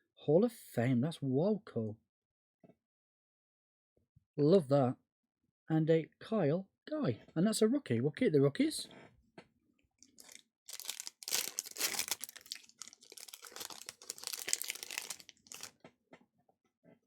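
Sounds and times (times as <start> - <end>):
foil wrapper tearing and crinkling: 10.0 - 15.7.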